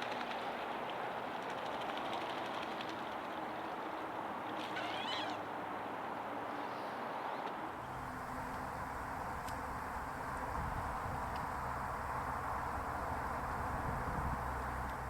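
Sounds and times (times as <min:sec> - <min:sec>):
low background rumble: 0:07.8 - 0:15.0.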